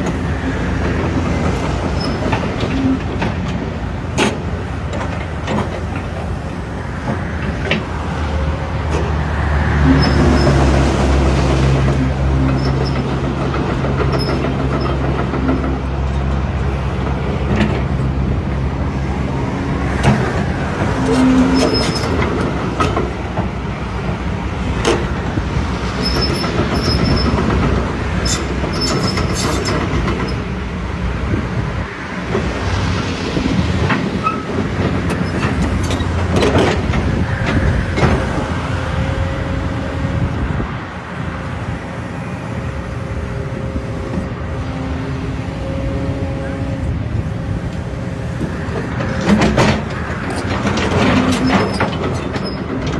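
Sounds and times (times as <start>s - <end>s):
excavator diesel engine running: 0.0s - 52.9s
metallic clanks and knocks: 49.0s - 52.9s.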